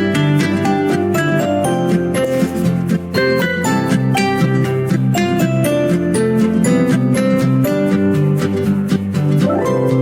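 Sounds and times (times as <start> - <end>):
plucked-string melody: 9.1 - 10.0.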